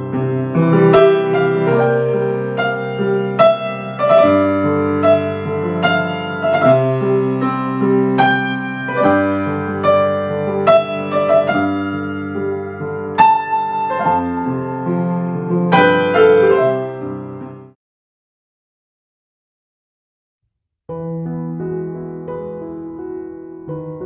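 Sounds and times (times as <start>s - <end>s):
piano playing slow chords: 0.0s - 17.8s.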